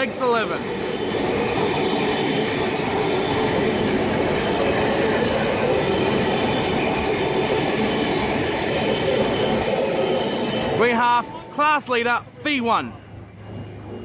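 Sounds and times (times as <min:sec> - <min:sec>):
train wheels on rails: 0:00.0 - 0:14.0.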